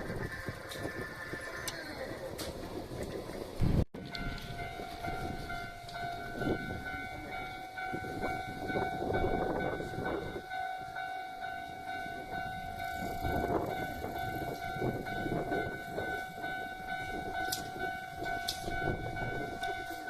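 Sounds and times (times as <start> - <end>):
train wheels rumbling on rails: 0.0 - 20.0
level crossing warning bell ringing: 4.0 - 20.0.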